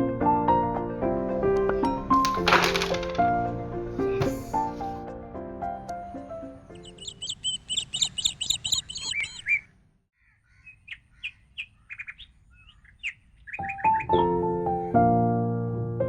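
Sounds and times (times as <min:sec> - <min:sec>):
piano music: 0:00.0 - 0:07.2, 0:13.7 - 0:16.0
birds chirping: 0:06.3 - 0:14.5.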